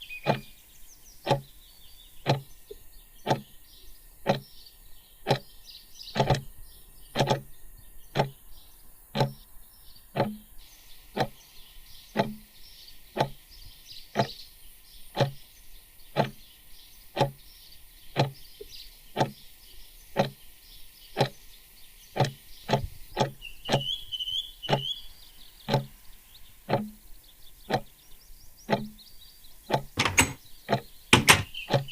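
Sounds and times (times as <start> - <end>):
steady clicking knocks with thud: 0.3 - 0.5, 1.3 - 1.5, 2.2 - 3.5, 4.2 - 4.5, 5.3 - 5.5, 6.2 - 6.5, 7.2 - 7.5, 8.2 - 8.4, 9.2 - 9.4, 10.2 - 10.4, 11.2 - 11.4, 12.2 - 12.5, 13.2 - 13.4, 14.2 - 14.4, 15.2 - 15.4, 16.2 - 16.4, 17.2 - 17.4, 18.2 - 19.4, 20.2 - 20.4, 22.2 - 23.8, 25.7 - 25.9, 26.7 - 27.0, 28.7 - 29.0, 29.7 - 31.9.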